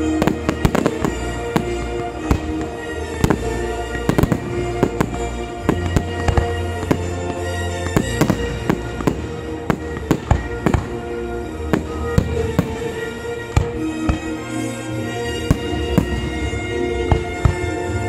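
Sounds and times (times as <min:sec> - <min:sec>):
fireworks bangs: 0:00.0 - 0:14.4
music playing: 0:00.0 - 0:18.0.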